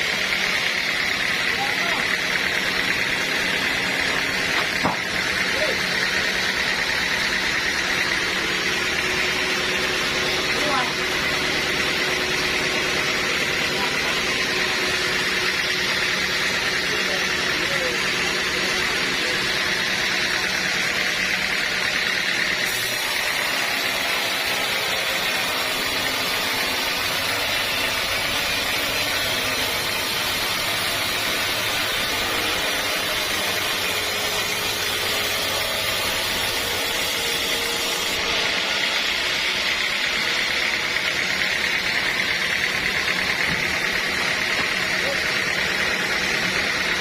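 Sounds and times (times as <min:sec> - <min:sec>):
sawmill machinery running: 0:00.0 - 0:47.0.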